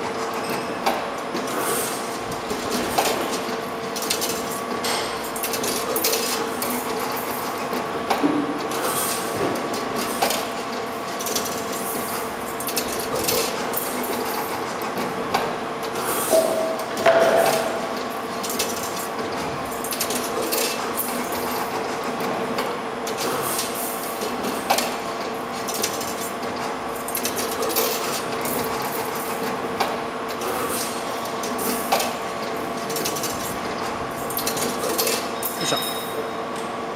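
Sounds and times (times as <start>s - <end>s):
machine parts clicking and clacking: 2.5s - 8.2s, 10.0s - 15.4s, 17.0s - 23.3s, 24.2s - 30.5s, 31.3s - 35.8s.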